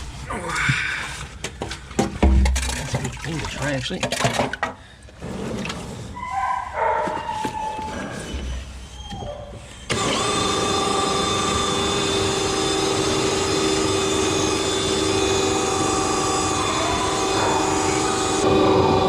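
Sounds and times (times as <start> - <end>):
drain jetter engine running: 9.9 - 19.0.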